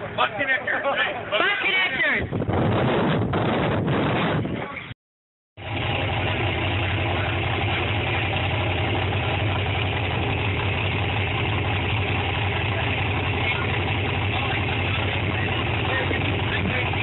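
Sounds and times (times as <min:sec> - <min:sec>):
engine idling: 0:05.6 - 0:17.0.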